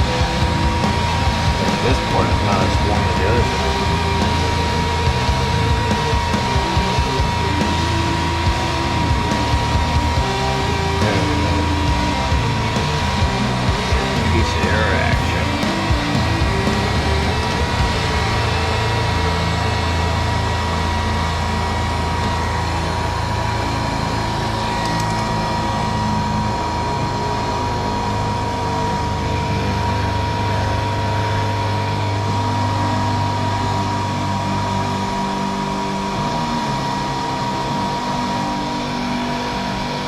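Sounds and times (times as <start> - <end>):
heat gun blower whining: 0.0 - 30.6.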